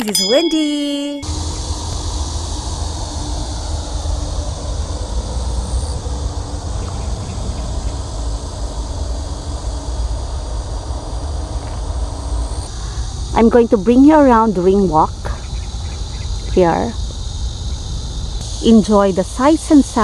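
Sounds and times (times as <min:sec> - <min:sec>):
faint hum: 0:00.0 - 0:20.0
low rumble: 0:01.5 - 0:20.0
high even hiss: 0:18.3 - 0:20.0.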